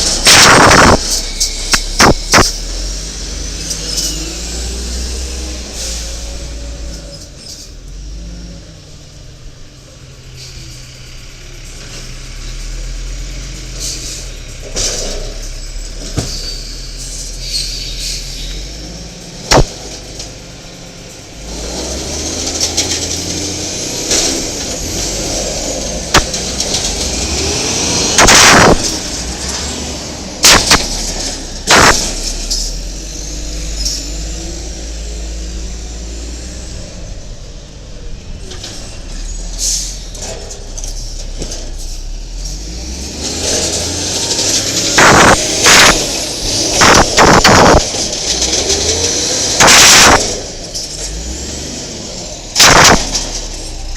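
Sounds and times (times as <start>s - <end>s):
sharp loud bangs and clatters: 0.0s - 2.8s, 19.4s - 20.4s, 22.3s - 29.7s, 30.3s - 34.2s, 43.3s - 51.2s, 52.4s - 53.9s
garbage truck engine revving: 0.0s - 9.0s, 10.9s - 53.9s.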